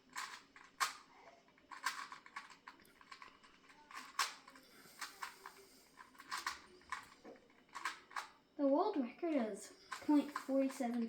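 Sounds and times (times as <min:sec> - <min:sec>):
puzzle cube clicking as turned: 0:00.0 - 0:08.3.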